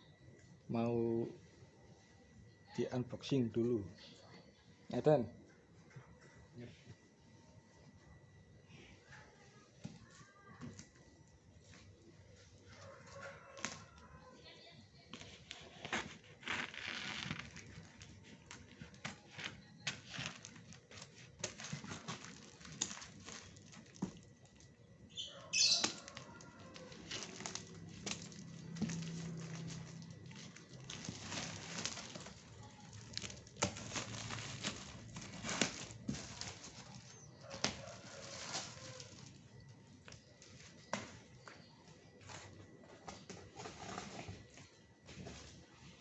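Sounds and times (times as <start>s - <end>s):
packaging crackling burst: 15.2s - 24.7s, 25.6s - 39.4s
packaging rustling and crinkling: 15.2s - 41.3s.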